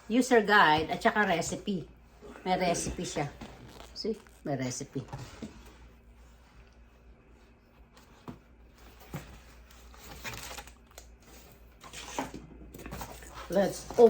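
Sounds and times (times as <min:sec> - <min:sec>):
paper and cardboard rustling: 0:07.8 - 0:14.0.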